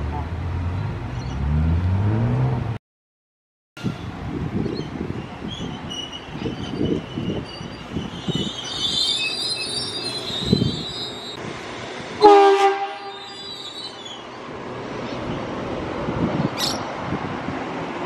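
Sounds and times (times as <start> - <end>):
moving train rumble: 3.8 - 18.0
train wheels squealing: 4.7 - 11.4, 13.1 - 14.4
train horn blast: 12.2 - 13.4.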